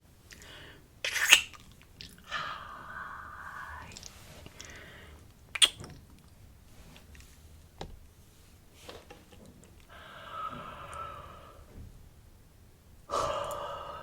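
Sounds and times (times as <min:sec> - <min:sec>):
mouth click: 0:05.5 - 0:05.9
person yawning: 0:13.1 - 0:14.0.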